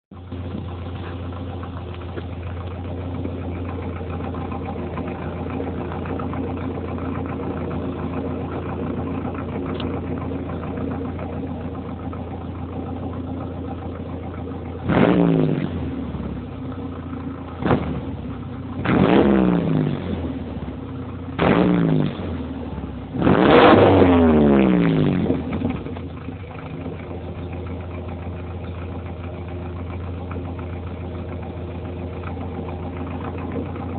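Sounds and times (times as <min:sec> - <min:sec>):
pickup engine idling and revving: 0:00.1 - 0:33.9.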